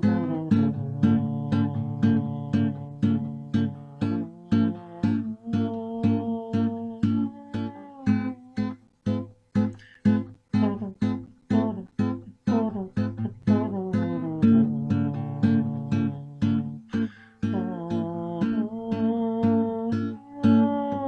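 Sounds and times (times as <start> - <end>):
acoustic guitar playing: 0.0 - 21.0.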